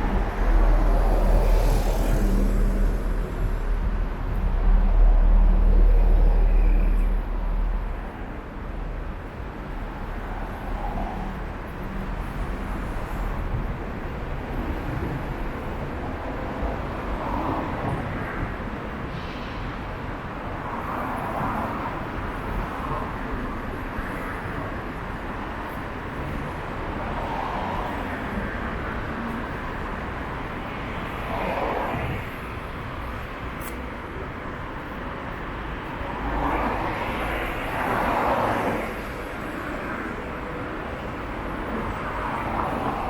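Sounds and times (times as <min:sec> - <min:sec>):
road traffic hum: 0:00.0 - 0:43.0.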